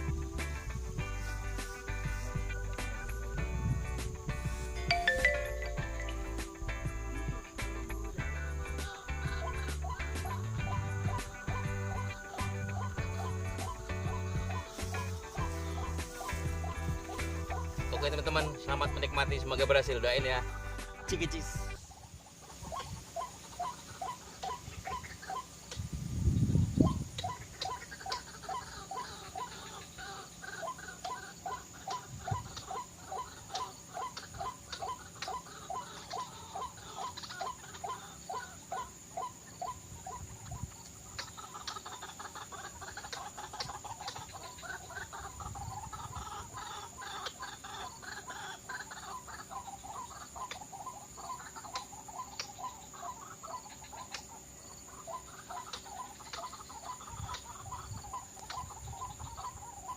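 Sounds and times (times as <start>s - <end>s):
waterhen croaking calls: 4.9s - 6.7s, 8.8s - 19.0s, 20.4s - 25.8s, 26.8s - 59.9s.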